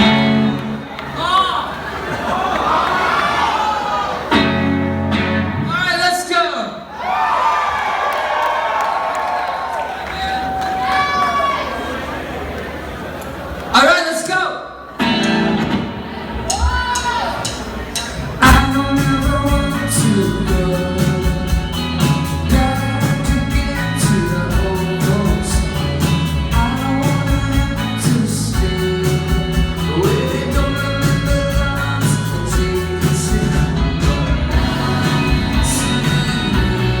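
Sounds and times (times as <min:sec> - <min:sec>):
rock band playing live: 0:00.0 - 0:01.2, 0:04.3 - 0:06.2, 0:14.9 - 0:37.0.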